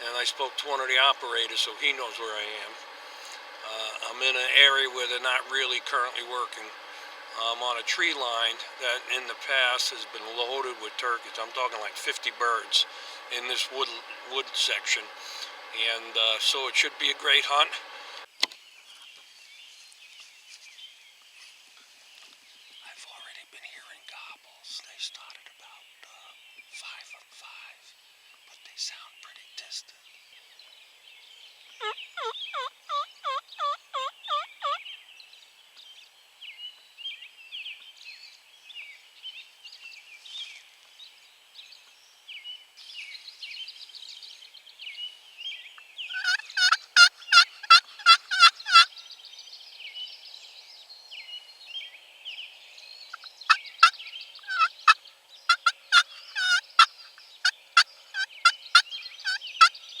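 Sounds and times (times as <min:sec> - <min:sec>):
bird repeated call notes: 0:00.0 - 0:17.9, 0:31.7 - 0:34.8, 0:46.1 - 0:48.9, 0:53.1 - 1:00.0
small birds chattering: 0:00.0 - 1:00.0.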